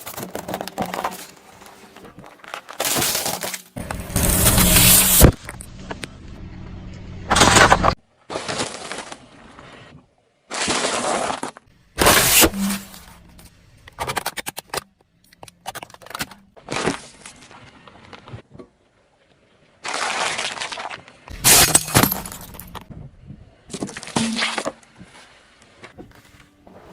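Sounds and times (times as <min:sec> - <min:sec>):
objects crunching under car tyre: 0:00.0 - 0:06.1, 0:07.3 - 0:09.9, 0:10.5 - 0:14.9, 0:15.5 - 0:18.5, 0:19.8 - 0:22.9.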